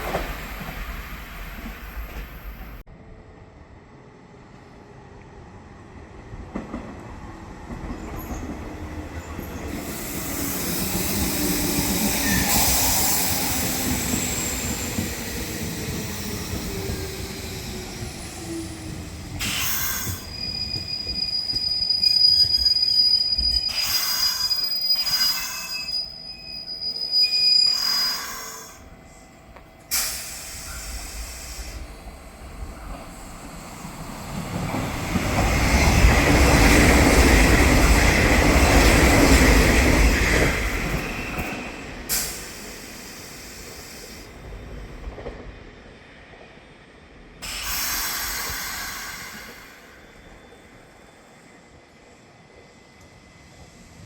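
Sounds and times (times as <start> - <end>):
electric train passing on rails: 0.0 - 54.0
high wheel squeal: 9.8 - 16.4, 19.4 - 28.8.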